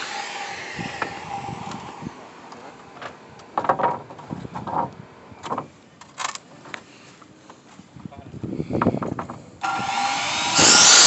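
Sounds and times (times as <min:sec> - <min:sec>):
knocks and clatters of tools on wood: 0:02.5 - 0:06.8, 0:08.8 - 0:09.5.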